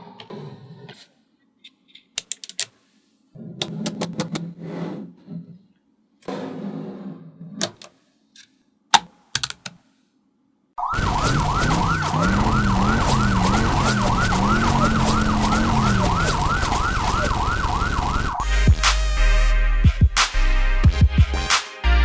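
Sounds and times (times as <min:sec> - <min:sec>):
police siren wailing: 0:10.8 - 0:18.7.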